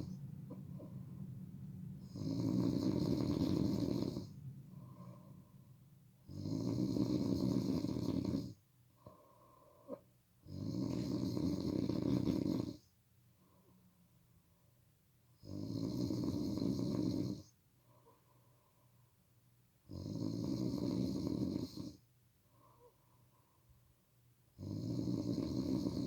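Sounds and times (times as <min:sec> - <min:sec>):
quiet breathing: 0:00.0 - 0:10.2, 0:10.9 - 0:15.6, 0:16.9 - 0:19.3, 0:21.5 - 0:24.0
person snoring: 0:02.0 - 0:05.3, 0:06.3 - 0:08.6, 0:09.9 - 0:12.8, 0:24.6 - 0:26.0.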